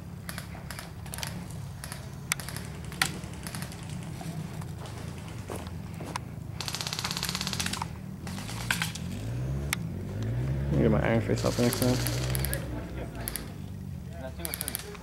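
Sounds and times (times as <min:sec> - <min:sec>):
airsoft guns firing: 0:00.2 - 0:04.0, 0:06.6 - 0:09.0, 0:11.4 - 0:12.6, 0:14.4 - 0:15.0.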